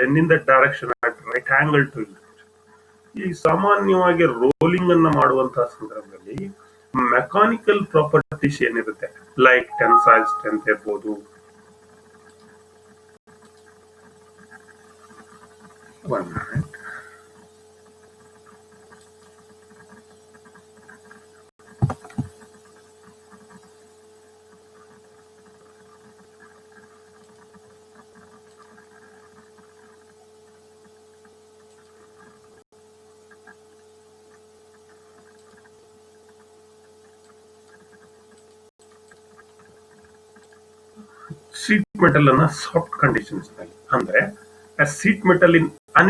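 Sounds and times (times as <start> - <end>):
electrical hum: 0.0 - 11.2, 14.4 - 17.4, 21.7 - 22.6, 25.6 - 46.0
sharp knocks: 21.8 - 22.4.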